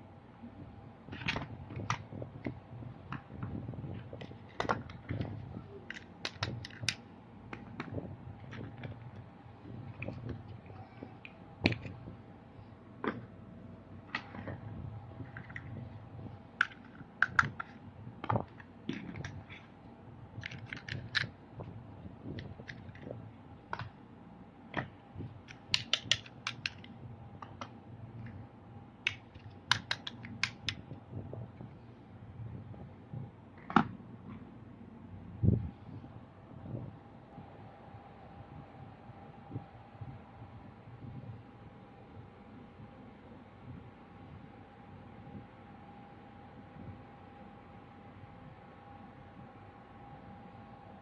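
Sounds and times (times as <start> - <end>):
steady low hum: 0.0 - 51.0
plastic toy clicks and knocks: 5.9 - 7.9, 16.6 - 19.7, 20.4 - 21.3, 25.5 - 27.7, 29.1 - 30.8.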